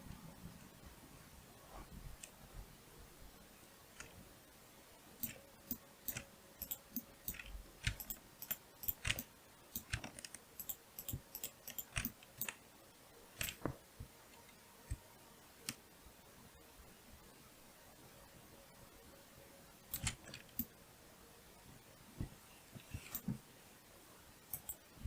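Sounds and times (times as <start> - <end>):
mouse and keyboard clicking: 5.2 - 12.6, 13.4 - 13.7, 19.9 - 20.7, 24.5 - 24.8.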